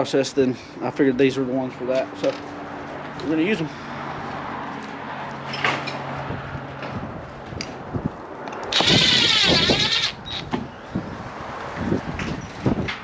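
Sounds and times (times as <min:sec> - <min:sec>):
power drill driving a screw: 0:08.7 - 0:10.6.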